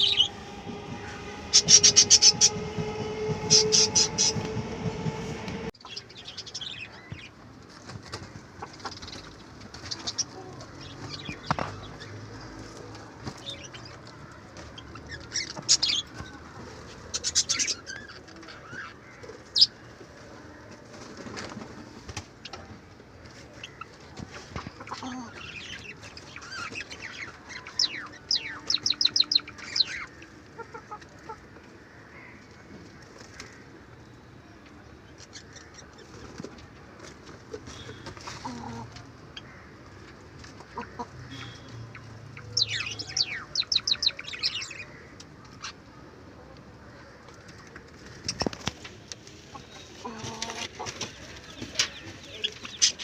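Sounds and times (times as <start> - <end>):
chickens making soft calls: 23.3 - 26.7, 28.2 - 31.8, 35.2 - 46.2, 46.9 - 53.0.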